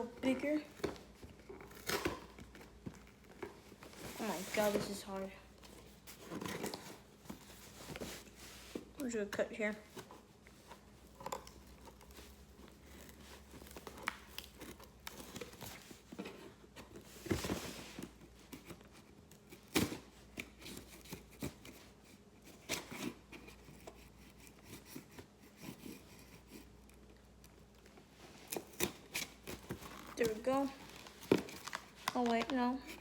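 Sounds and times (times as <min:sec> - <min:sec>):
scissors cutting packaging: 0:00.2 - 0:05.0, 0:06.2 - 0:07.5, 0:11.1 - 0:17.0, 0:18.1 - 0:27.6, 0:28.4 - 0:33.0
packaging crinkling: 0:28.4 - 0:33.0
packaging tearing: 0:28.5 - 0:33.0.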